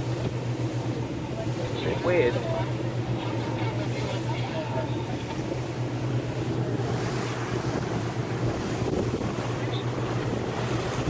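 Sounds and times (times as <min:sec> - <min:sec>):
boat engine drone: 0:00.0 - 0:11.0
water rushing along hull: 0:00.0 - 0:11.0
wind buffeting microphone: 0:05.2 - 0:11.0.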